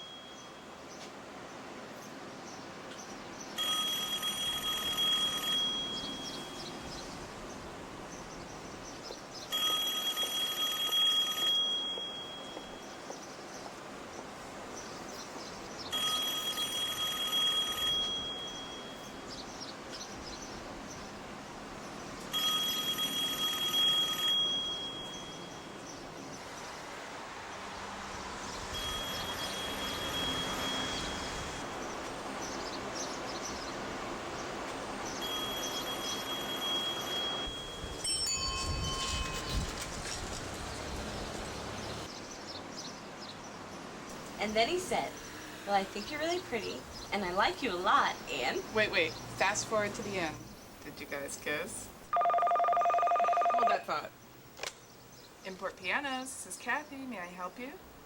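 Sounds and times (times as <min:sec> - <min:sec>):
electronic telephone ringing: 0:03.6 - 0:06.6, 0:09.5 - 0:12.8, 0:15.9 - 0:19.0, 0:22.3 - 0:25.8, 0:28.8 - 0:31.6, 0:35.2 - 0:39.4, 0:52.1 - 0:54.0.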